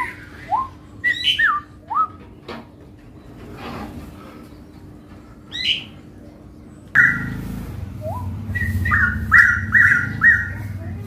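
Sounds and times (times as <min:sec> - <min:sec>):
bird singing whistled phrases: 0:00.0 - 0:02.2, 0:05.5 - 0:05.9, 0:07.0 - 0:07.3, 0:08.0 - 0:10.6.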